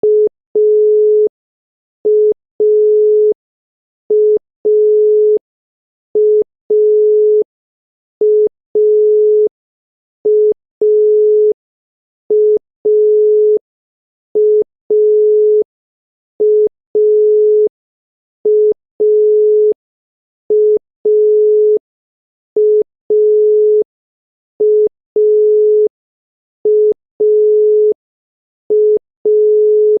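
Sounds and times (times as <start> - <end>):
telephone dial tone beeps: 0.0 - 1.3, 2.0 - 3.4, 4.1 - 5.4, 6.2 - 7.5, 8.2 - 9.5, 10.2 - 11.6, 12.3 - 13.6, 14.3 - 15.7, 16.4 - 17.7, 18.4 - 19.8, 20.5 - 21.8, 22.6 - 23.9, 24.6 - 25.9, 26.6 - 28.0, 28.7 - 30.0.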